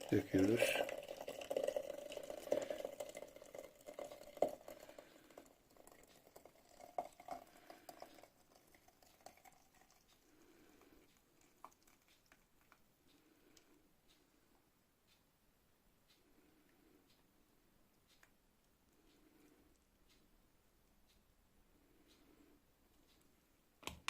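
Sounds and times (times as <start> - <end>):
tea pouring through strainer: 0.0 - 12.8.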